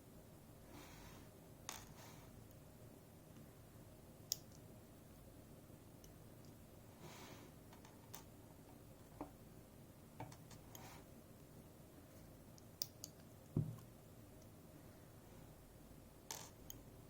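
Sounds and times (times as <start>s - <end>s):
dull knock: 13.6s - 13.8s.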